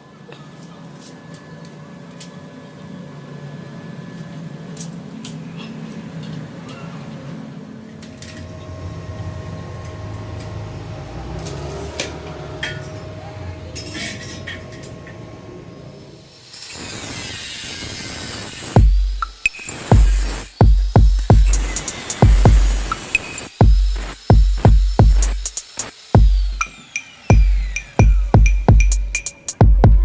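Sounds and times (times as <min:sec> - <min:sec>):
steady low hum: 0:07.4 - 0:16.4, 0:18.8 - 0:25.6, 0:26.2 - 0:30.0
bright hissing: 0:16.0 - 0:28.3.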